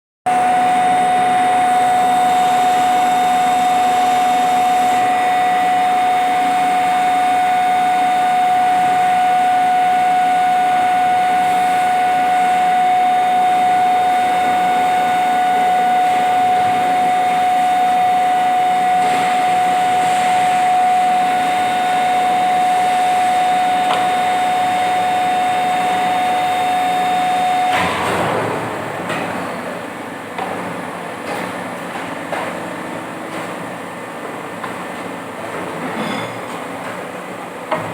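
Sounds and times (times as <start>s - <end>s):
constant high whine: 0.3s - 29.2s
injection moulding machine running: 0.3s - 32.0s.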